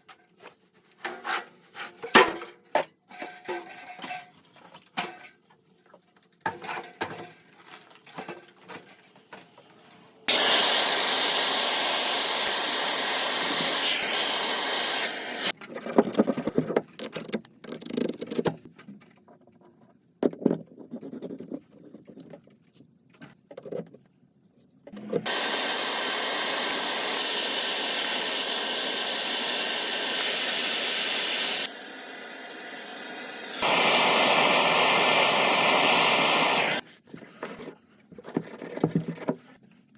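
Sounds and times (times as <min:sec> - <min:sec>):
power tool whirring: 0:10.3 - 0:15.6, 0:25.0 - 0:36.8.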